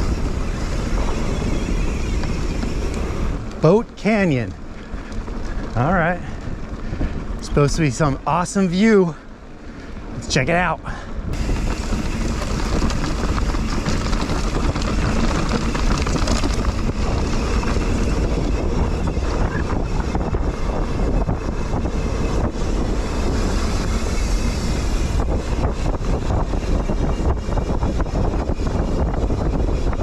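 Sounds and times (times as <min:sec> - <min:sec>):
bike rolling on trail rumble: 0:00.0 - 0:30.0
wind buffeting microphone: 0:00.0 - 0:30.0.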